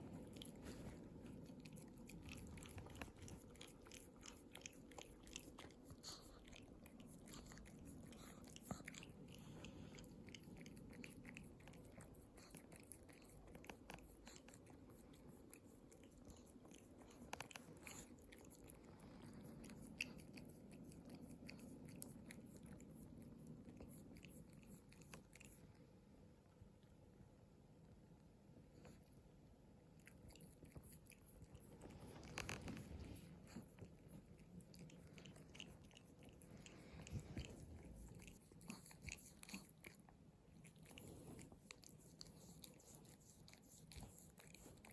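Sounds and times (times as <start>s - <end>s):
dog licking feet: 0.0s - 25.6s, 30.0s - 44.9s.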